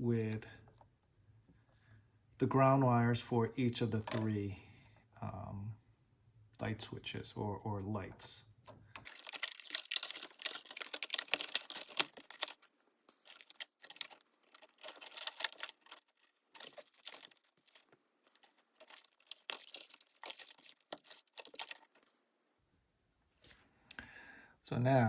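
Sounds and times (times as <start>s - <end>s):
wires clicking and scraping: 8.2s - 22.2s.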